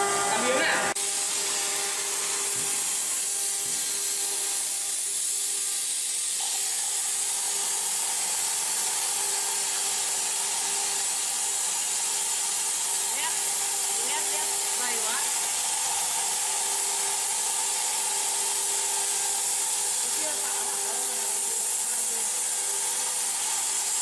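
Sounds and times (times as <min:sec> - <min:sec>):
steady whine: 0:00.0 - 0:06.0
plasma torch arc hissing: 0:00.0 - 0:24.0.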